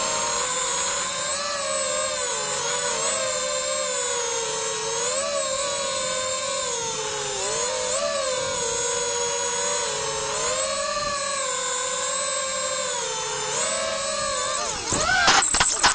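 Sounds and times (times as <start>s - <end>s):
drone motors whining: 0.0s - 15.9s.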